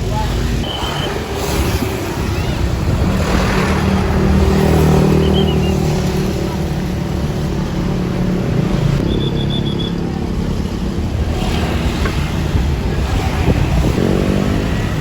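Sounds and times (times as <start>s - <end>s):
bus engine running: 0.0s - 15.0s
short high beeps: 9.0s - 10.0s.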